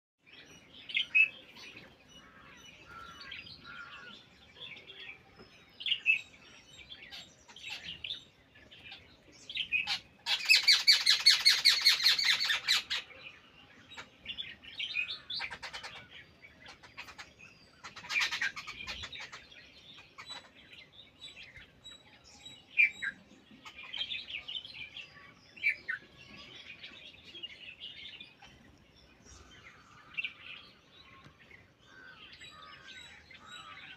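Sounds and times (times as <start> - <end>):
small birds chirping: 0.2 - 33.9
loud rapid bird chattering: 9.6 - 13.1, 14.8 - 20.6.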